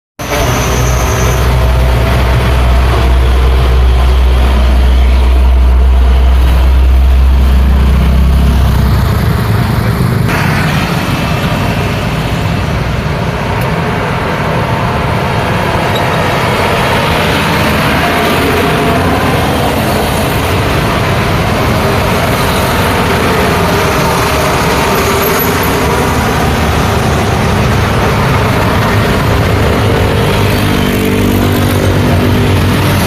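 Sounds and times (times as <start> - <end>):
heavy vehicle engine rumble: 0.2 - 33.0
passing traffic: 0.2 - 33.0.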